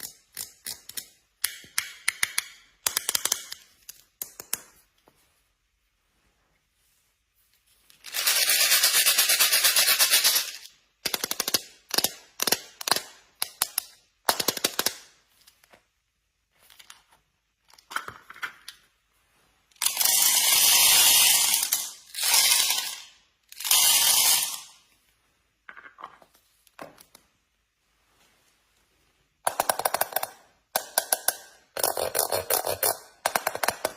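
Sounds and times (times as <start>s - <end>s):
small hard objects rattling: 19.8s - 24.7s.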